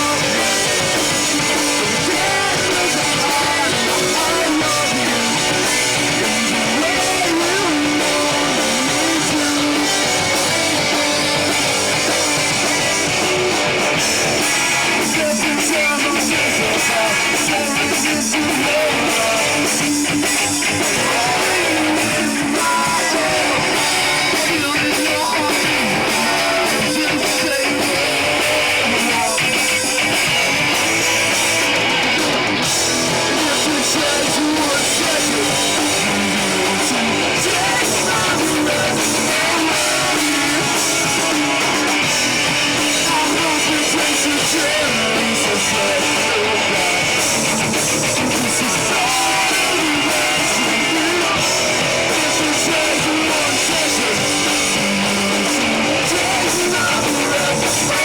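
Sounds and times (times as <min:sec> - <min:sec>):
distorted electric guitar: 0:00.0 - 0:58.0
drums: 0:00.0 - 0:58.0.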